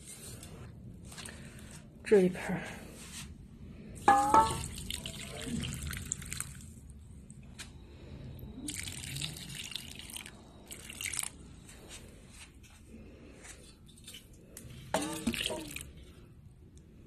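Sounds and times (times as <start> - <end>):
water dripping and trickling: 4.2 - 6.8, 8.7 - 11.4, 15.0 - 16.0.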